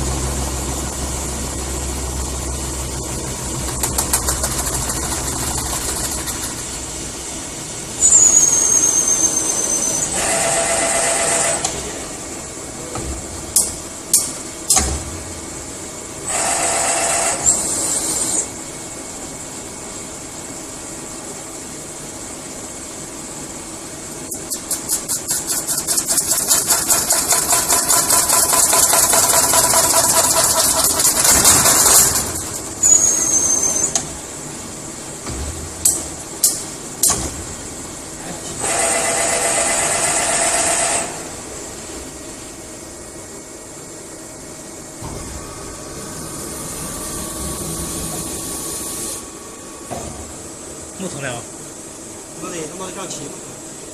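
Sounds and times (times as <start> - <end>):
machine hum: 0.0 - 8.3, 10.0 - 53.9
fast rhythmic chatter: 3.5 - 6.9
high falling whistle: 8.0 - 10.1, 32.8 - 34.0
loud whirring: 38.6 - 41.4, 45.0 - 50.9.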